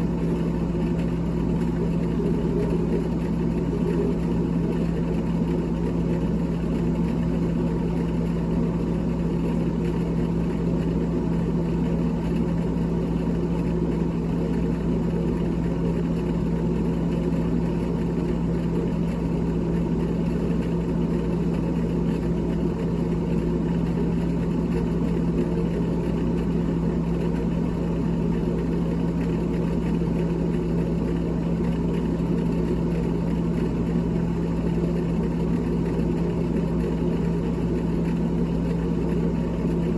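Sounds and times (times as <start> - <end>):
electric motor hum: 0.0 - 5.9.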